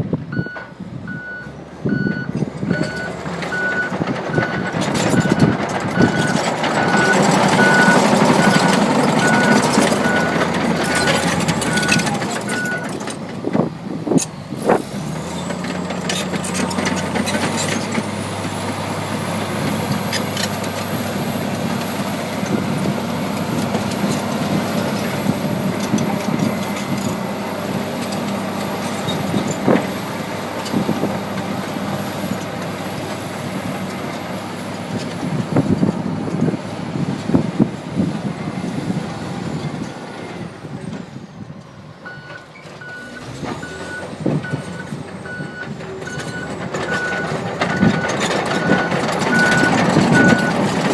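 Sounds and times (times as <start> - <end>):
bulldozer diesel engine running: 0.0 - 50.9
reversing alarm beeping: 0.3 - 13.0, 42.0 - 50.6.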